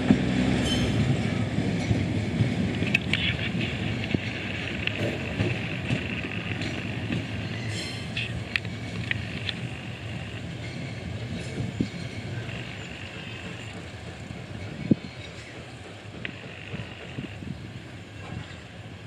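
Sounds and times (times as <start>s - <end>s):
train rumbling: 0.0s - 19.0s
high wheel squeaks: 2.7s - 17.6s.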